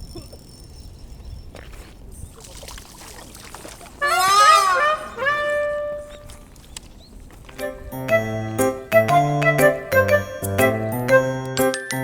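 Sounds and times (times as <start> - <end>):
background music: 7.6 - 12.0.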